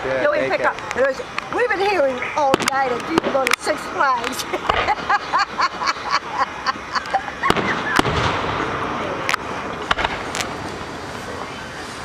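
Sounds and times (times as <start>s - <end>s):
rush of noise: 0.0s - 12.0s
small firework pops: 0.7s - 5.0s, 7.4s - 10.8s
loud firework bangs: 1.1s - 11.4s.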